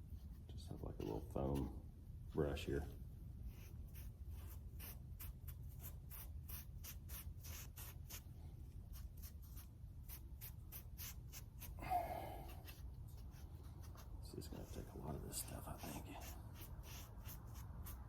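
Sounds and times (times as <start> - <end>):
foam brush scratching on wood: 3.5 - 8.2, 8.9 - 11.8, 12.5 - 18.0.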